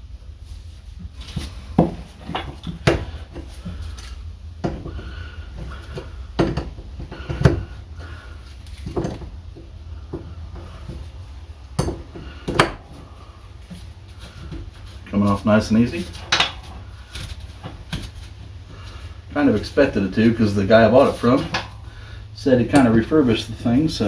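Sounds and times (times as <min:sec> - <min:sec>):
tools clinking on metal fitting: 0:16.2 - 0:16.6.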